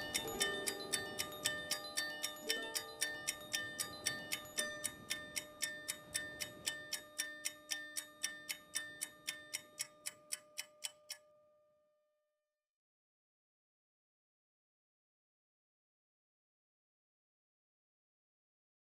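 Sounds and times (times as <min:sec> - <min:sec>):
clock-like ticking: 0:00.0 - 0:11.3.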